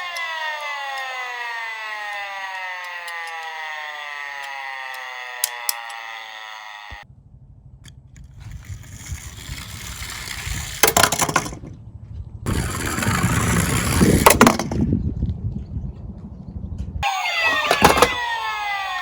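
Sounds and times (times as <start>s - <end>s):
toy car wheels rumbling: 0.0s - 7.0s, 8.2s - 11.8s, 12.5s - 14.9s, 17.0s - 19.0s
clattering knocks: 17.4s - 18.3s.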